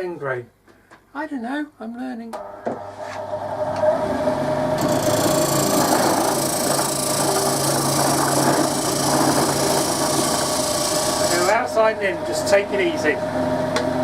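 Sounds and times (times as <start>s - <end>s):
turning tool cutting wood: 4.8s - 11.8s
wood lathe motor hum: 4.8s - 12.7s.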